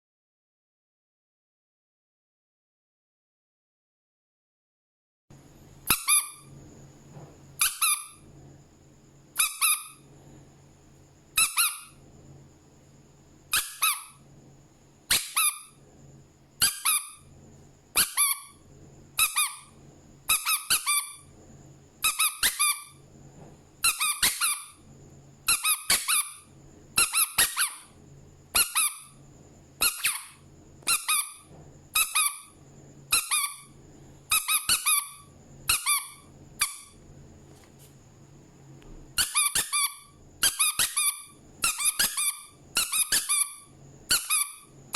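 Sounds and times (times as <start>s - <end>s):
rubber duck toy squeaking: 5.9s - 6.5s, 7.6s - 8.2s, 9.4s - 10.0s, 11.4s - 12.0s, 13.5s - 14.2s, 15.1s - 15.7s, 16.6s - 17.2s, 18.0s - 18.6s, 19.2s - 19.7s, 20.3s - 21.2s, 22.0s - 23.0s, 23.8s - 24.8s, 25.5s - 26.4s, 27.0s - 27.9s, 28.6s - 29.2s, 29.8s - 33.7s, 34.3s - 37.0s, 39.2s - 44.7s.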